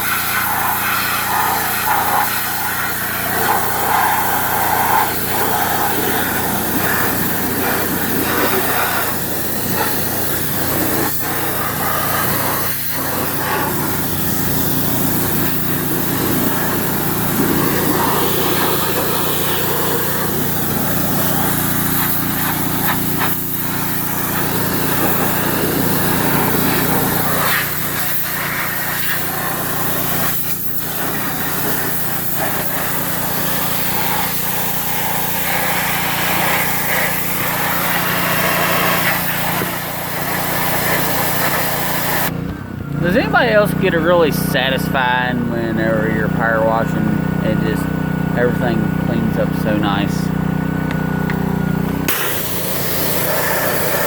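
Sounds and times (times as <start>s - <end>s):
high-pressure water jet hissing: 0.0s - 42.4s, 43.0s - 54.0s
pressure washer engine hum: 0.0s - 54.0s.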